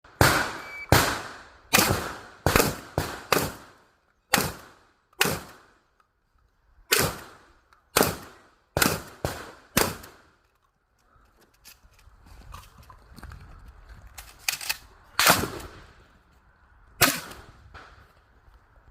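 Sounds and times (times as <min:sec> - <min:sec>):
shotgun shots with echo: 0:00.2 - 0:05.7, 0:06.9 - 0:07.4, 0:08.0 - 0:10.2.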